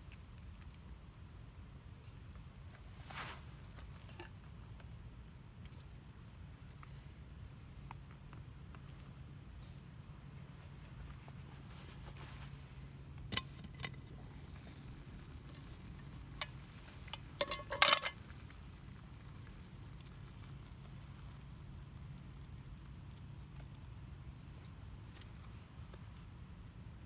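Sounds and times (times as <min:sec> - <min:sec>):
loud clatter of utensils: 0:17.1 - 0:18.2
metal cookware clinking: 0:17.1 - 0:18.2.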